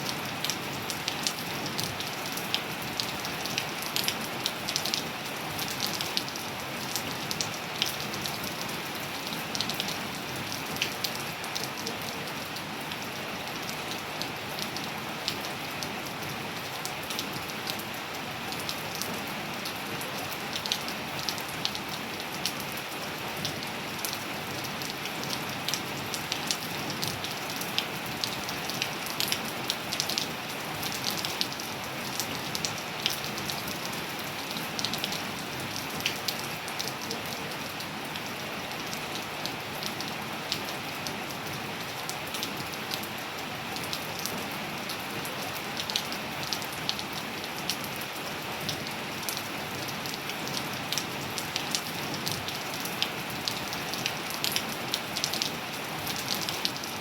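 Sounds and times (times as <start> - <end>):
rain pattering on hard surface: 0.0 - 57.0.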